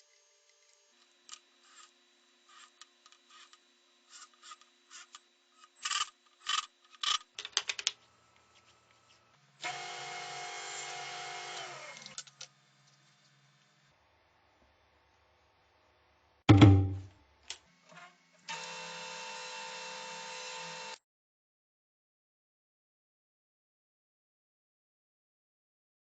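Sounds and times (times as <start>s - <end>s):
small power tool running: 0.0s - 6.7s, 9.6s - 13.9s, 17.7s - 21.0s.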